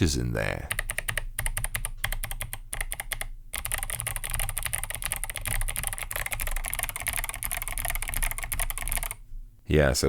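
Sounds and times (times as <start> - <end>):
mechanical keyboard typing: 0.7 - 9.2.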